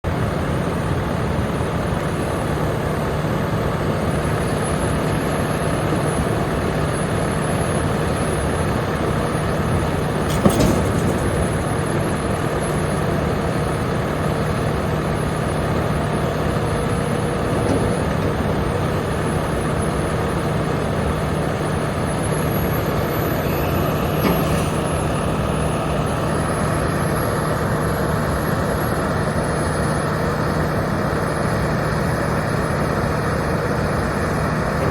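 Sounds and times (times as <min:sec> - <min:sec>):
excavator diesel engine running: 0:00.0 - 0:34.9
sharp clunk: 0:10.3 - 0:12.8, 0:24.2 - 0:25.1.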